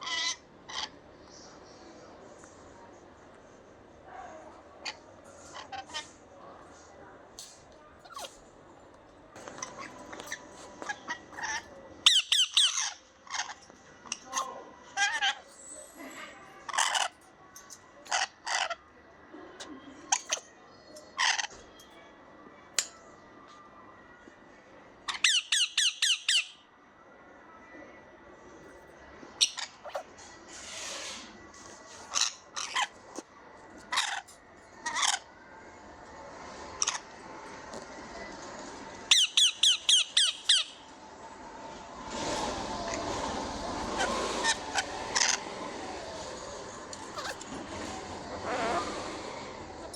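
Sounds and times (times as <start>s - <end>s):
loud squeaky bird calls: 8.0s - 8.4s, 9.5s - 15.9s, 25.1s - 26.6s, 39.1s - 40.8s, 47.0s - 47.6s
lovebird chirping and squawking: 9.6s - 15.8s, 25.1s - 26.6s, 29.4s - 30.1s, 39.1s - 40.8s, 43.9s - 45.5s, 47.0s - 47.7s, 48.3s - 49.1s.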